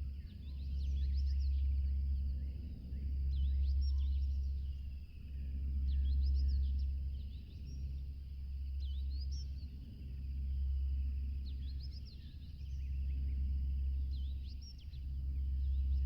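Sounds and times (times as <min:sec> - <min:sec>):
deep rumble: 0:00.0 - 0:16.0
small birds chirping: 0:00.1 - 0:10.2.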